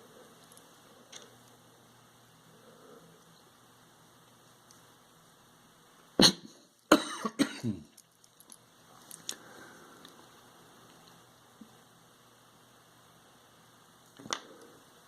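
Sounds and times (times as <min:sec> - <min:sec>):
person coughing: 0:06.2 - 0:07.9.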